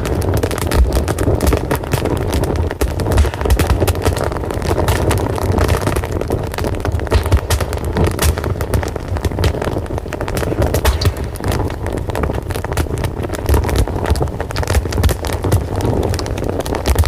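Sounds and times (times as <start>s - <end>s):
fire crackling and popping: 0.0s - 17.0s
fire roaring: 0.0s - 17.0s.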